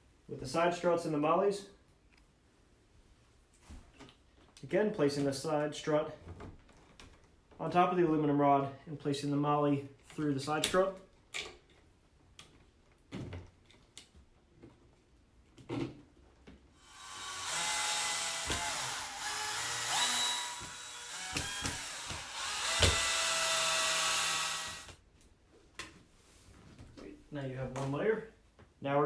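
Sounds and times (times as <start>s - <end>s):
power drill running: 16.8s - 25.0s.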